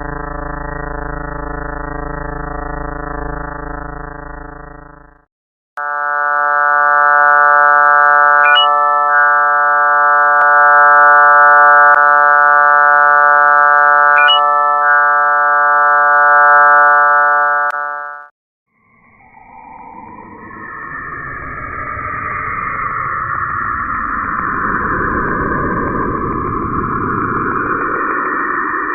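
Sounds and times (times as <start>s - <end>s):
electronic drone of stacked tones: 0.0s - 5.2s, 5.8s - 18.3s
wavering electronic sound: 0.0s - 5.2s, 5.8s - 18.3s
rising chirps: 7.1s - 12.0s, 13.0s - 17.8s, 18.8s - 28.9s.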